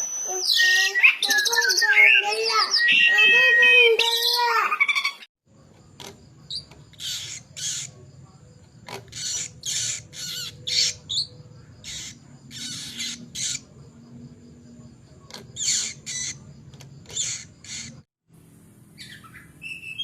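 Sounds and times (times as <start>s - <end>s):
songbird harsh raspy calls: 6.4s - 13.9s, 15.2s - 18.1s.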